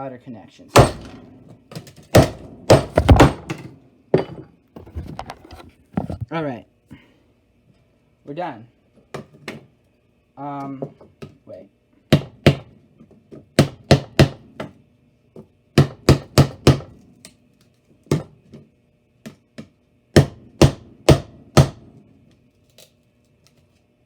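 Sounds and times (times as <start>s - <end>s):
loud sharp knocks on electronics: 0.8s - 4.4s, 12.1s - 12.7s, 13.6s - 14.8s, 15.8s - 17.0s, 18.1s - 18.4s, 19.2s - 22.0s.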